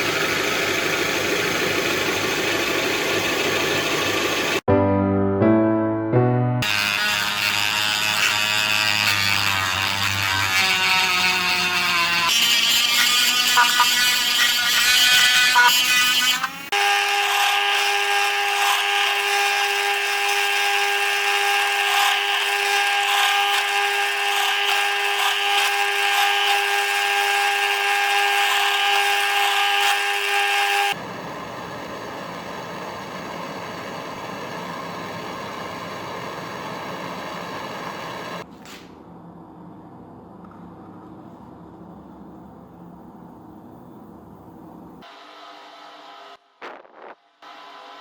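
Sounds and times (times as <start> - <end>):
handheld power tool whining: 6.6 - 31.0.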